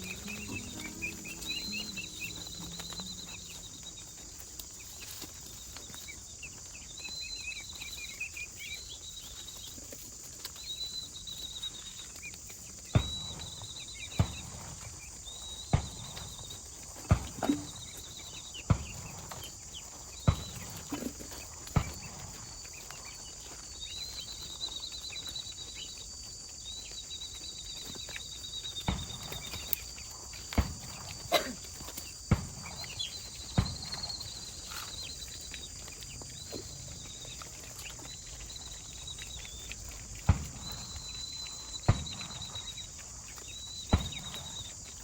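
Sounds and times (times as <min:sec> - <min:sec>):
sharp knocks: 0:00.0 - 0:03.9
steady high chirring: 0:00.0 - 0:05.6.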